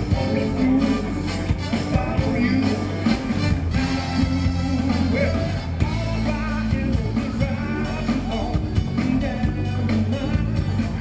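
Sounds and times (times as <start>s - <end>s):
sustained bass: 0.0s - 11.0s.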